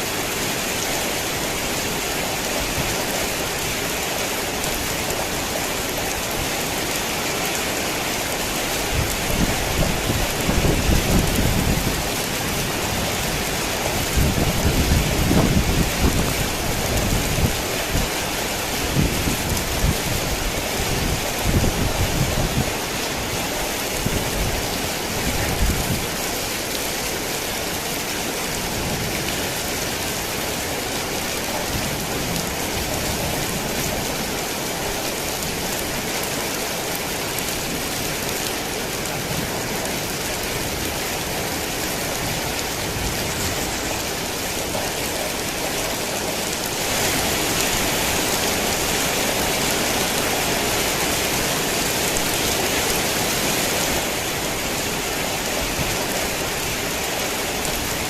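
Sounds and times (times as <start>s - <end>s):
heavy rain hissing: 0.0s - 58.0s.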